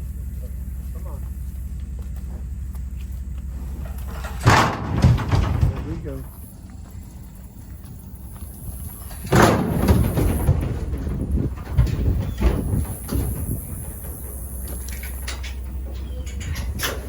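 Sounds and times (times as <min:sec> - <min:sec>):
low rumble: 0:00.0 - 0:17.0
metal trailer rattling and banging: 0:03.5 - 0:17.0
loud metal clang: 0:04.2 - 0:06.2, 0:09.2 - 0:11.1.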